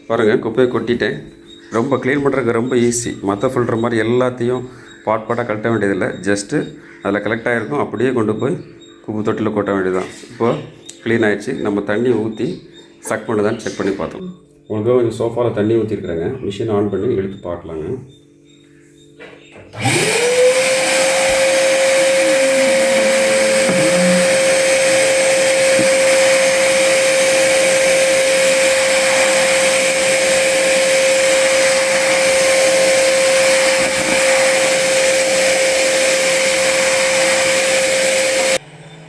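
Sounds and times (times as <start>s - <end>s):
vacuum cleaner motor whine: 19.7s - 39.0s.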